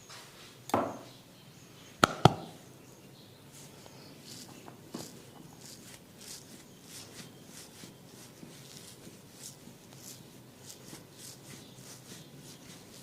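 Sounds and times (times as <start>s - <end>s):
hands rubbing over hair and skin: 3.6s - 13.0s.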